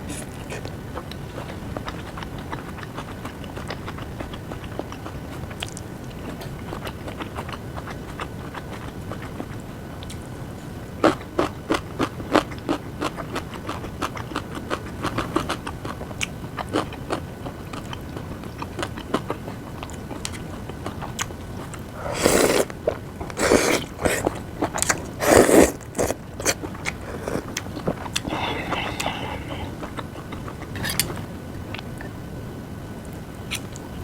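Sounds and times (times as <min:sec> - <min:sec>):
person chewing food: 0:00.6 - 0:10.2, 0:11.0 - 0:31.2
noisy bursts: 0:28.2 - 0:30.0.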